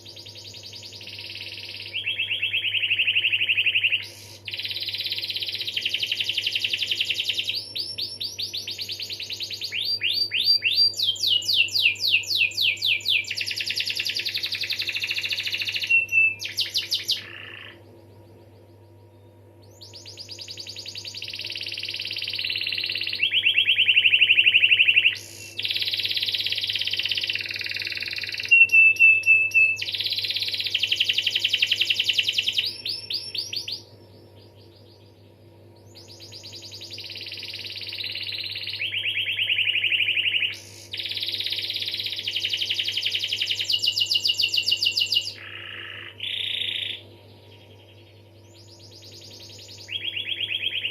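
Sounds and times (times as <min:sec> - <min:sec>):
canary singing trills: 0:00.0 - 0:50.9
faint steady hum: 0:00.0 - 0:50.9.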